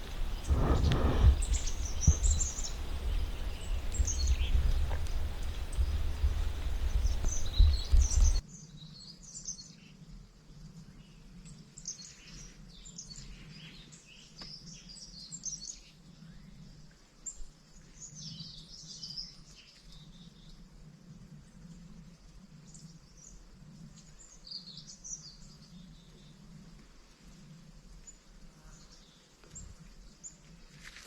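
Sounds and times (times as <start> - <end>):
small birds chirping: 0.0 - 9.8.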